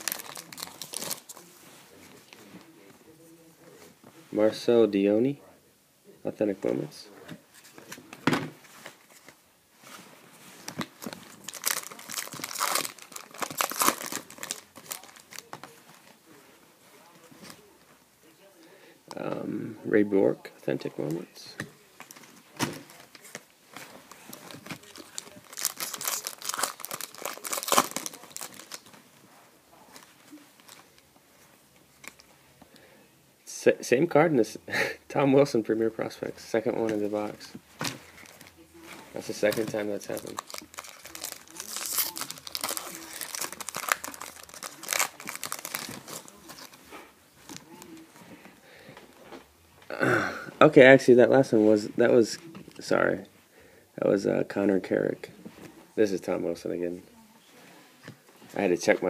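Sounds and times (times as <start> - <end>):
wrapper tearing and crinkling: 0.0 - 1.4, 10.7 - 15.5, 24.1 - 29.0, 39.2 - 46.8.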